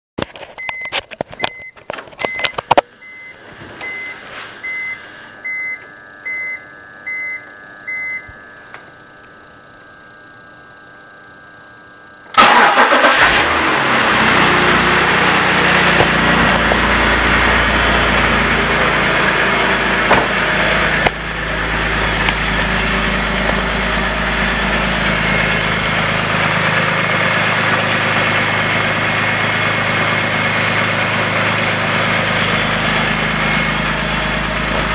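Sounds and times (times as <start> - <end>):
dashboard warning chimes: 0.6 - 9.4
car engine cranking and idling: 12.2 - 34.9
engine clanking noise: 12.4 - 34.9.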